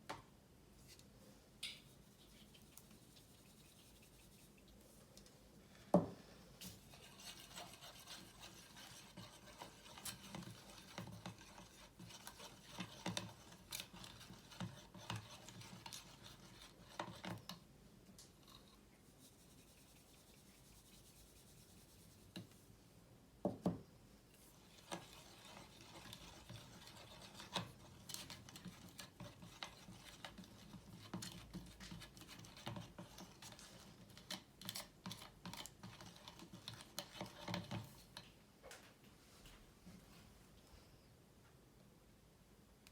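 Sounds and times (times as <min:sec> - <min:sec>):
utensil scraping thick slime: 0:06.8 - 0:17.6, 0:24.4 - 0:38.0.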